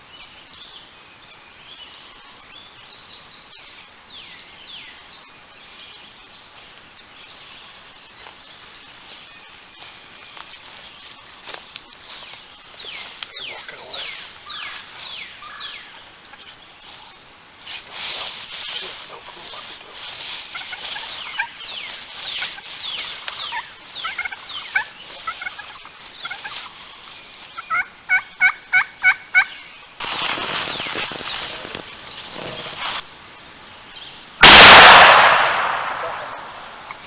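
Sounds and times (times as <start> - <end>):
small birds chirping: 0.2 - 34.8
turkey gobble: 18.7 - 26.9, 27.6 - 29.6
turkey yelps: 23.4 - 26.6, 27.6 - 29.5.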